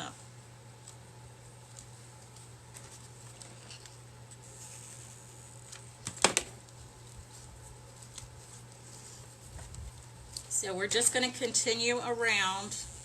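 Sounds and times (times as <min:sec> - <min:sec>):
faint steady hum: 0:00.0 - 0:13.0
handling rope and clay pot: 0:05.9 - 0:10.6.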